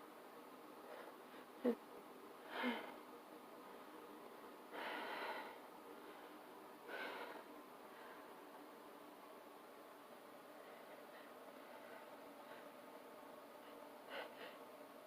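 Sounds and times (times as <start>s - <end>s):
person breathing: 2.4s - 3.0s, 4.7s - 8.6s, 10.4s - 14.8s.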